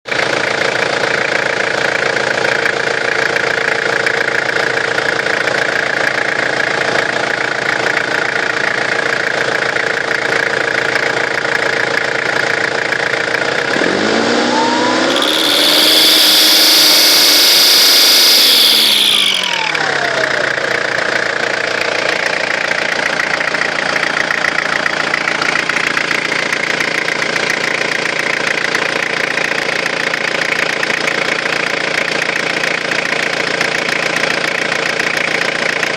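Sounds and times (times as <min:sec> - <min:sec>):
car engine idling and revving: 0:00.0 - 0:35.9
high-pitched turbo whine: 0:12.6 - 0:27.1.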